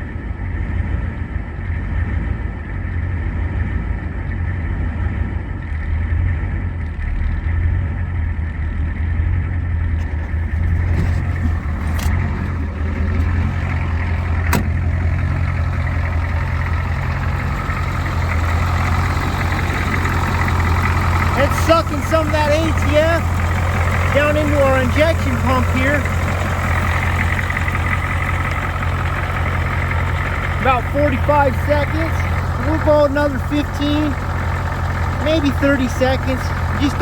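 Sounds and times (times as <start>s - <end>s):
diesel engine idling: 0.0s - 37.0s.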